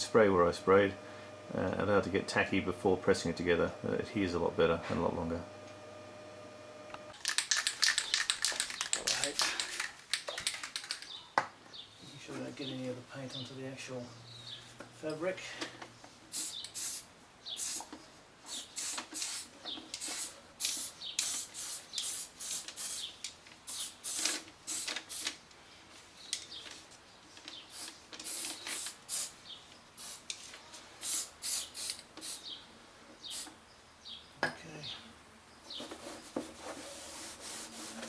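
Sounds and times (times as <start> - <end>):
aerosol spray hissing bursts: 16.3 - 25.4, 27.7 - 29.4, 30.0 - 30.3, 31.0 - 32.6.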